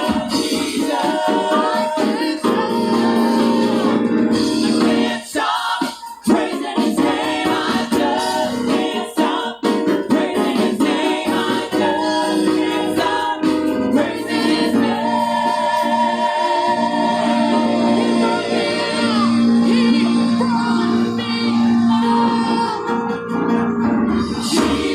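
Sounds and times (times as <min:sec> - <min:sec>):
sharp percussive beat: 0:00.0 - 0:03.6, 0:04.3 - 0:16.0, 0:24.2 - 0:24.9
gospel choir singing in harmony: 0:00.0 - 0:24.9.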